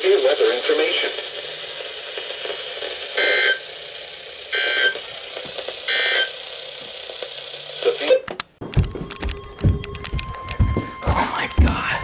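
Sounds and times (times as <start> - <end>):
radio static: 0.0 - 6.4, 7.2 - 8.3.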